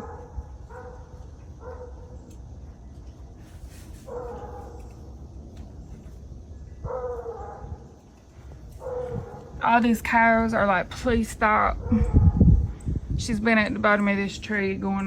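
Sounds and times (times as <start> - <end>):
distant dog baying: 0.0 - 2.2, 6.8 - 7.9, 8.8 - 9.6.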